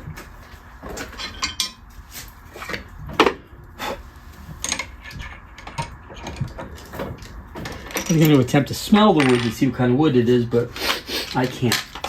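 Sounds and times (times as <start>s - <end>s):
handling knocks and clinks: 0.1s - 3.4s, 4.5s - 9.9s.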